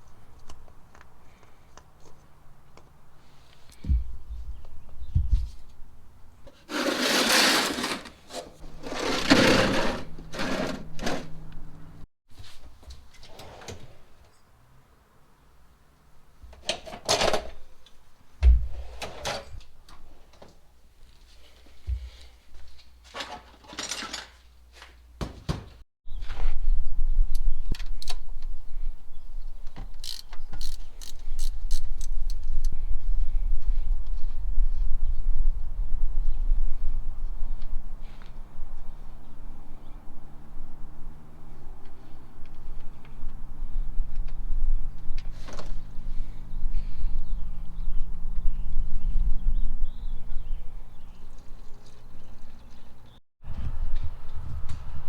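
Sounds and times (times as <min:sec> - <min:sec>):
ratchet wrench clicking: 0:30.0 - 0:32.5.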